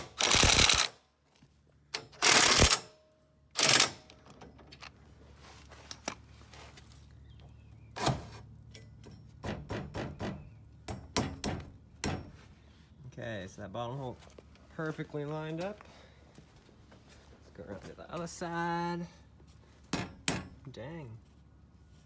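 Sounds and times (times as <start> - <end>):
power tool driving bolts: 0.0 - 1.0, 2.0 - 4.9.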